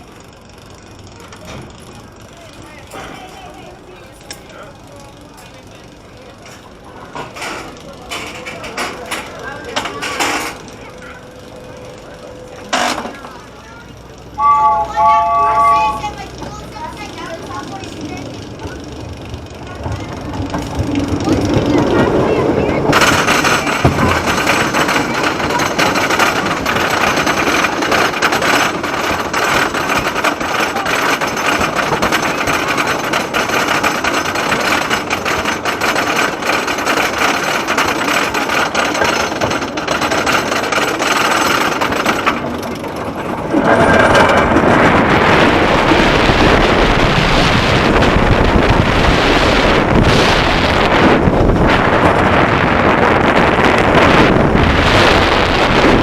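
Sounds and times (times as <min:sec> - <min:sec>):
roller coaster chain lift rattling: 0:00.0 - 0:56.0
wind rushing on microphone: 0:43.6 - 0:56.0.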